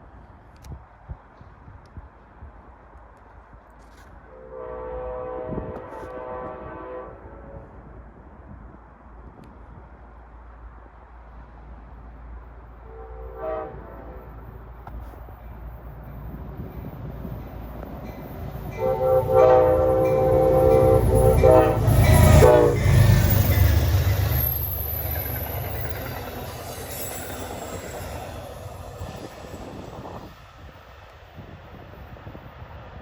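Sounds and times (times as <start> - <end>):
train rumbling past: 4.1 - 33.0
locomotive horn blasts: 4.3 - 7.7, 12.8 - 14.4, 18.7 - 23.9.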